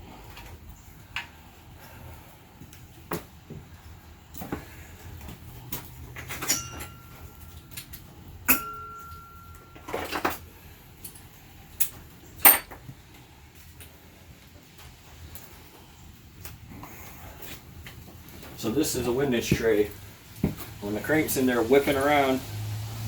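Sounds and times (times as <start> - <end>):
metal tools and bolts clinking: 6.1 - 12.9.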